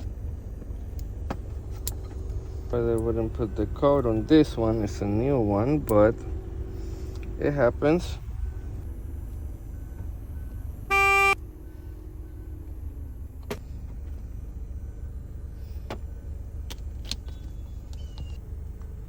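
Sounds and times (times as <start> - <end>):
steady low rumble: 0.0 - 19.0
loud electronic beep: 10.9 - 11.4.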